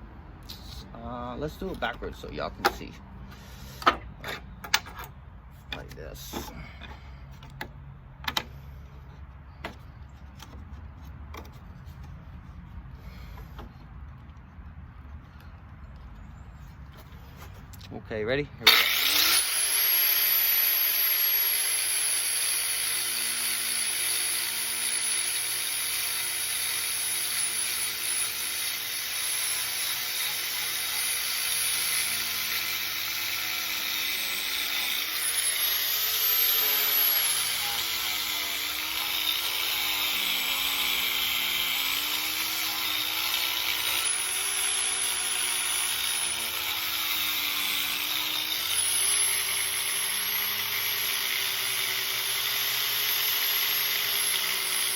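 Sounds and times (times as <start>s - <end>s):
angle grinder grinding metal: 18.6s - 54.9s.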